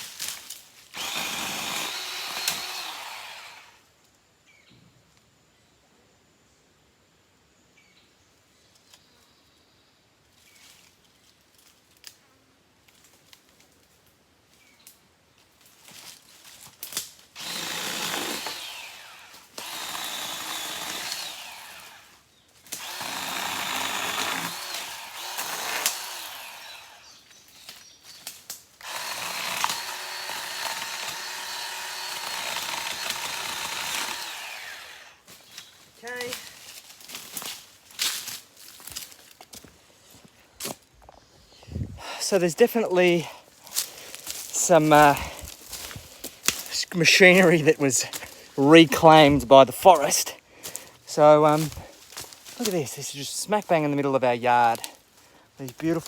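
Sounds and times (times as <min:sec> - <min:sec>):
chainsaw cutting wood: 0:00.0 - 0:03.8, 0:16.9 - 0:27.4, 0:28.4 - 0:38.4, 0:43.1 - 0:55.0.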